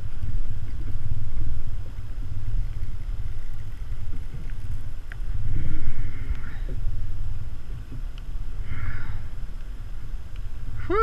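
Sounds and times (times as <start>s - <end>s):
wind buffeting microphone: 0.0s - 11.0s
faint clicks: 2.6s - 5.4s, 6.2s - 6.9s, 7.7s - 8.4s, 9.5s - 10.5s.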